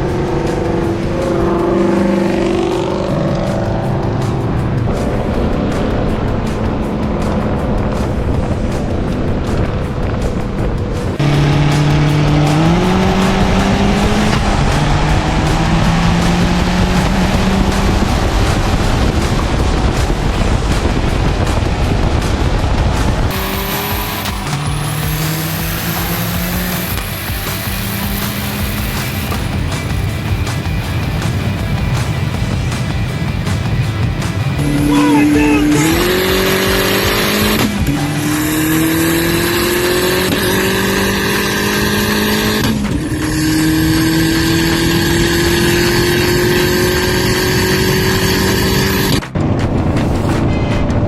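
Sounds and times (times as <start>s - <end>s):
background music with held bass: 0.0s - 51.0s
car running: 0.0s - 51.0s.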